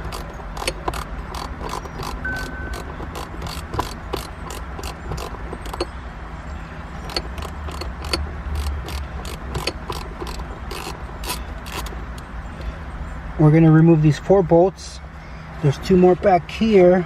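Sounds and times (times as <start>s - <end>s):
socket ratchet clicking: 0.0s - 5.9s, 7.0s - 12.2s.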